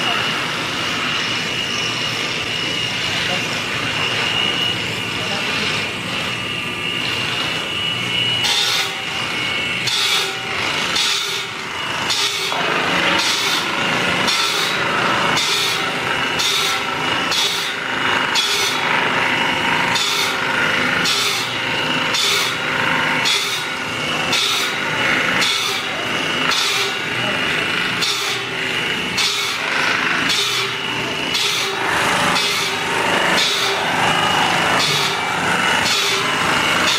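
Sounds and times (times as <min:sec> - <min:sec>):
saw cutting wood: 0:07.0 - 0:36.9.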